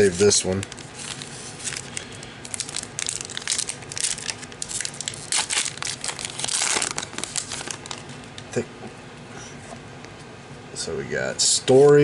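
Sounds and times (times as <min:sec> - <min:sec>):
wrapper crinkling and tearing: 0:00.0 - 0:08.1.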